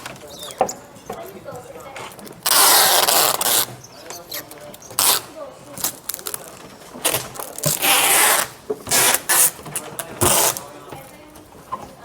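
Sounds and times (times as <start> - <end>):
packing tape ripping off roll: 2.1 - 10.7.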